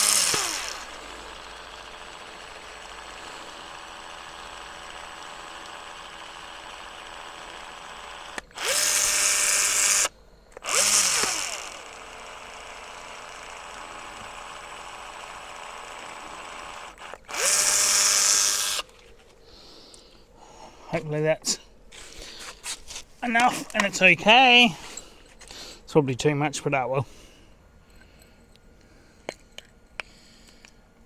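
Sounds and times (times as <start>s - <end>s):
power drill motor spinning: 0.0s - 19.2s
steady quiet hum: 0.0s - 31.0s.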